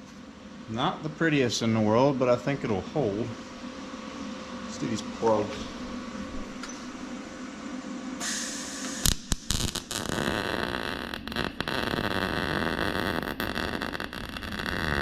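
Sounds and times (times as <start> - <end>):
welding arc crackling: 8.2 - 15.0
welding arc pops: 8.2 - 15.0.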